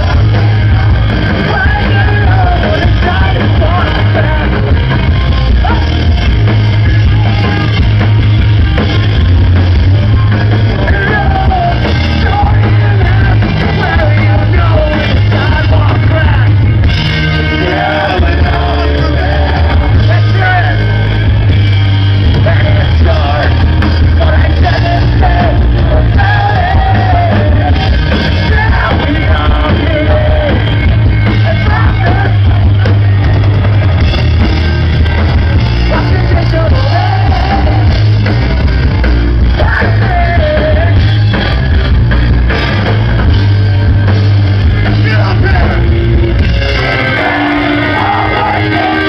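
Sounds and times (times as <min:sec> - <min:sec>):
sung vocals: 0:00.0 - 0:08.1, 0:09.9 - 0:21.4, 0:22.2 - 0:33.2, 0:35.6 - 0:38.2, 0:39.4 - 0:41.3, 0:44.6 - 0:49.0
live rock band playing: 0:00.0 - 0:49.0.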